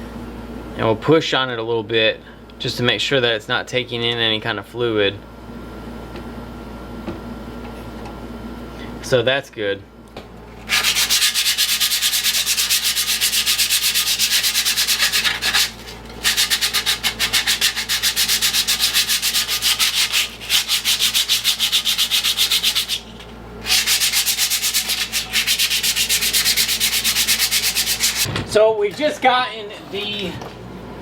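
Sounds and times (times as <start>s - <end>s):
hand sanding strokes: 10.7s - 28.3s.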